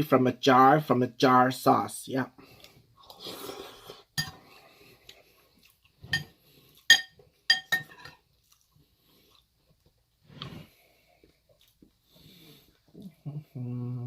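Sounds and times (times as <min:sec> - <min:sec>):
cutlery clinking against a dish: 0:06.1 - 0:08.2.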